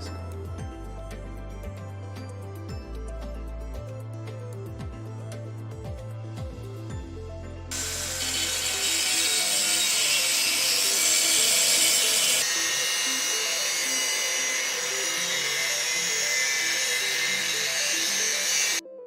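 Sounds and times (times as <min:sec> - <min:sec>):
angle grinder grinding iron: 0:07.7 - 0:18.8.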